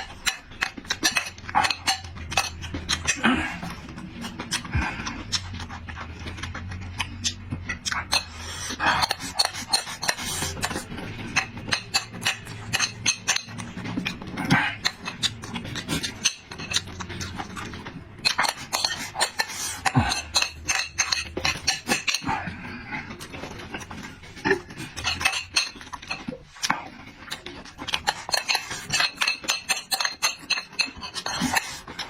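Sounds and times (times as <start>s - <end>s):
utensils clinking against plates: 7.7s - 32.0s.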